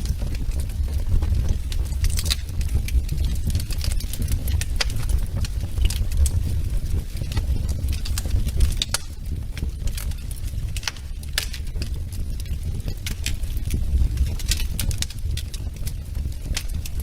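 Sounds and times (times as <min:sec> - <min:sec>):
fire crackling and popping: 0:00.0 - 0:17.0
low rumble of flames: 0:00.0 - 0:17.0.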